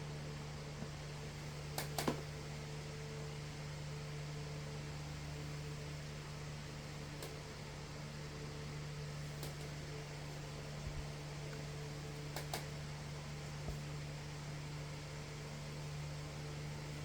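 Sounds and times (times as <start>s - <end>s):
light clicks: 11.5s - 12.7s.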